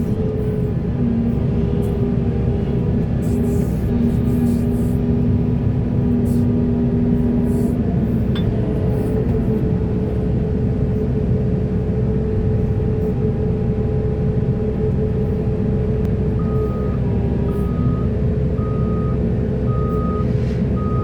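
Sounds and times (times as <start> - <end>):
diesel engine rumbling: 0.0 - 21.0
engine whine: 0.0 - 21.0
reversing alarm beep: 16.4 - 21.0.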